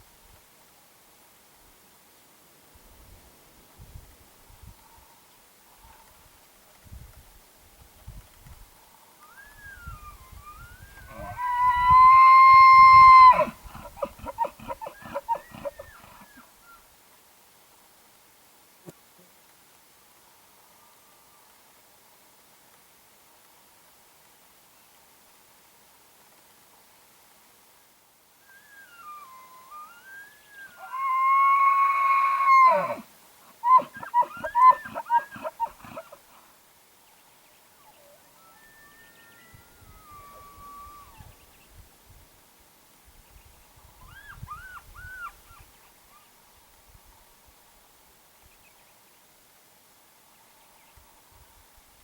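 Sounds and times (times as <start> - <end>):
elk bugling whistle: 9.2 - 16.2, 28.4 - 33.0, 33.6 - 36.1, 38.0 - 41.3
elk grunting chuckles: 13.6 - 16.2.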